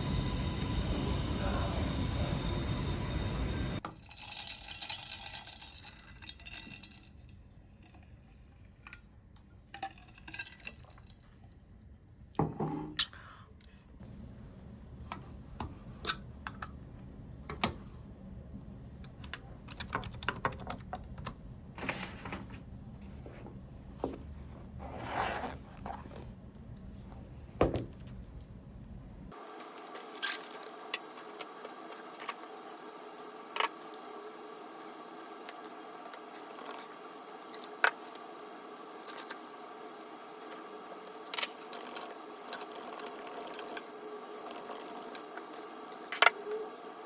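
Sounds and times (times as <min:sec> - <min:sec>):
steady low hum: 0:00.0 - 0:09.8, 0:20.9 - 0:47.0.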